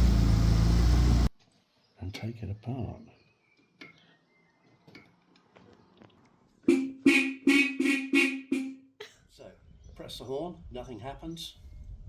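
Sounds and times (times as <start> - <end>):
car horn honking: 6.6 - 8.8.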